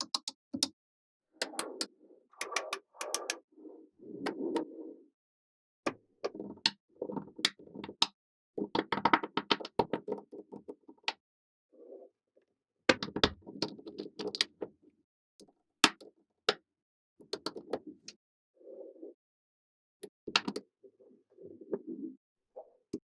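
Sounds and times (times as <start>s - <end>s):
magnetic balls clicking together: 2.4s - 3.4s.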